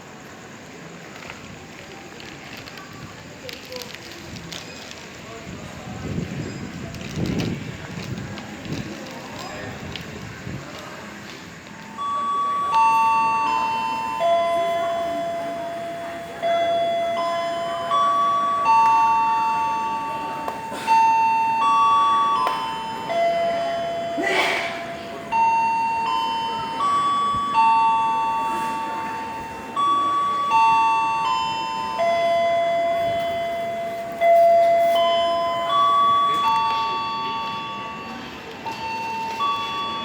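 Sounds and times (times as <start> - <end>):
bell-like chime melody: 11.8 - 40.0.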